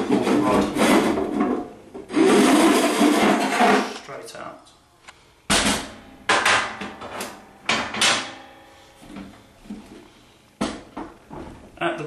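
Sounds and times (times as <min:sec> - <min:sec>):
rod sliding and scraping: 0:02.1 - 0:04.1.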